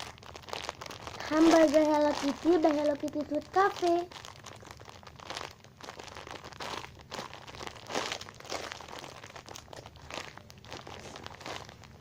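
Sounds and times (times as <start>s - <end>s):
plastic crinkling and rustling: 0.0s - 12.0s.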